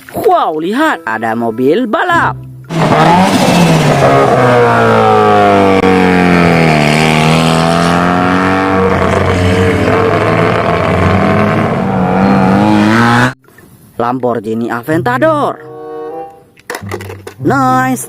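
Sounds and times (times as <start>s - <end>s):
race car engine revving: 2.7s - 13.4s.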